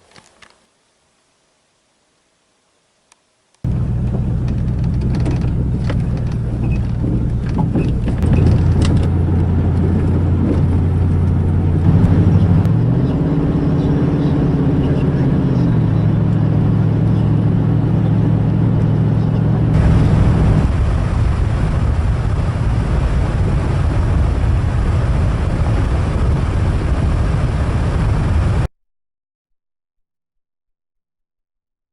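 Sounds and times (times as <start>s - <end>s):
road rumble: 3.6s - 28.7s
truck engine running: 3.7s - 28.7s.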